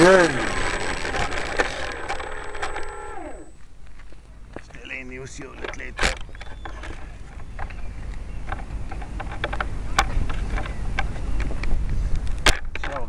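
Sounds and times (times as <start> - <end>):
wind rumble on microphone: 5.8 - 13.0.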